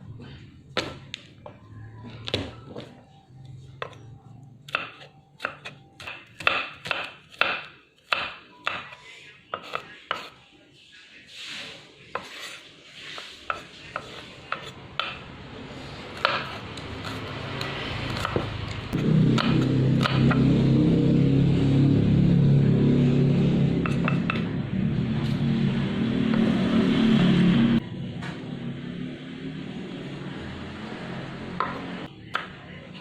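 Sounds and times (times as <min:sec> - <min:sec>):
knife chopping on cutting board: 0:04.7 - 0:10.3, 0:16.1 - 0:18.5, 0:19.4 - 0:20.4
knife scraping cutting board: 0:09.6 - 0:10.4, 0:11.3 - 0:14.8, 0:15.8 - 0:18.5.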